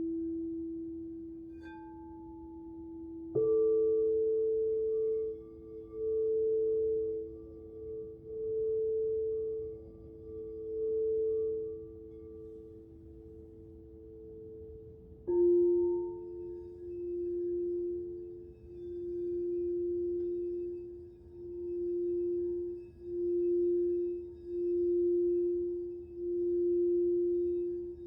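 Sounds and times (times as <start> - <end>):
crystal singing bowl tone: 0.0 - 28.0
higher ringing tone: 15.3 - 28.0.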